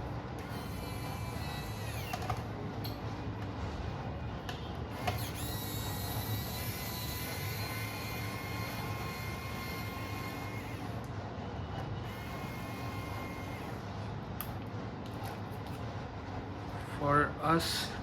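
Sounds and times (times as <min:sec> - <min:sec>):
constant low hum: 0:00.0 - 0:18.0
electric screwdriver whirring: 0:00.4 - 0:02.4, 0:04.9 - 0:11.1, 0:12.1 - 0:13.8.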